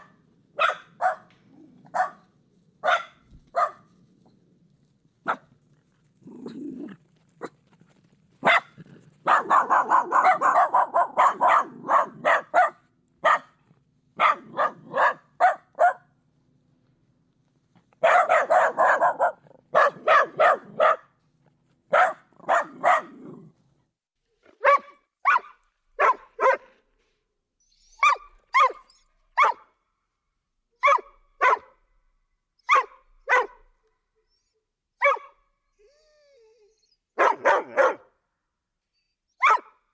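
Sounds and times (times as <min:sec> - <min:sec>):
dog barking: 0:00.0 - 0:03.9, 0:05.2 - 0:05.5, 0:08.4 - 0:13.6, 0:14.2 - 0:16.1, 0:18.0 - 0:21.1, 0:21.9 - 0:23.4, 0:24.5 - 0:26.8, 0:28.0 - 0:29.7, 0:30.8 - 0:31.8, 0:32.6 - 0:33.7, 0:35.0 - 0:35.4, 0:37.2 - 0:38.1, 0:39.4 - 0:39.8.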